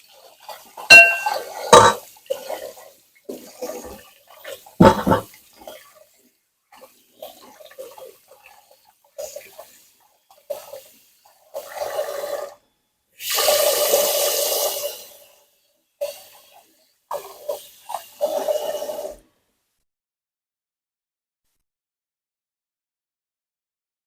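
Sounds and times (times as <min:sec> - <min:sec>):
water running and pouring: 0:00.0 - 0:10.9.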